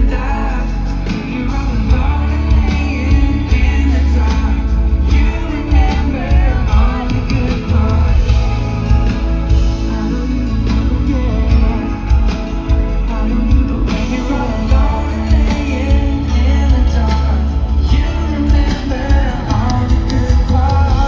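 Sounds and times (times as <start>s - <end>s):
heavy steady bass: 0.0s - 21.0s
live pop band with singing: 0.0s - 21.0s.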